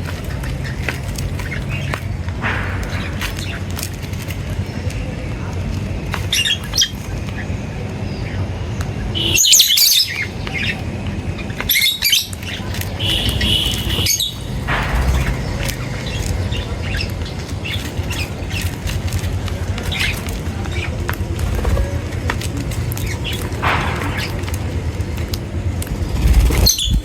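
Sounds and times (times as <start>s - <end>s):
birds chirping and calling: 0.0s - 27.0s
low rumble: 13.1s - 19.3s, 21.2s - 27.0s.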